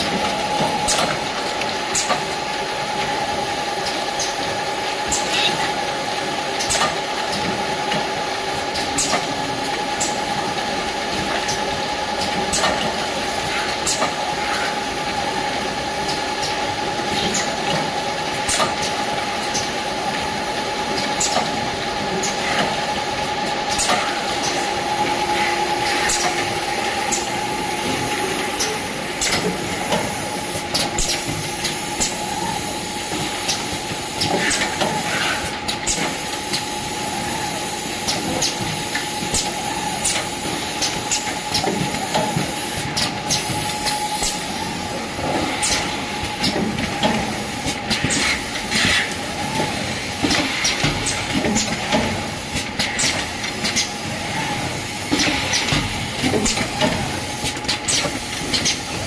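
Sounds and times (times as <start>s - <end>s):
machine clicks and clacks: 0.0s - 3.2s, 3.8s - 15.2s, 16.0s - 24.7s, 25.3s - 36.8s, 38.0s - 59.0s
packing machine humming: 0.0s - 59.0s
machine whine: 22.0s - 59.0s
machine hiss: 23.7s - 59.0s.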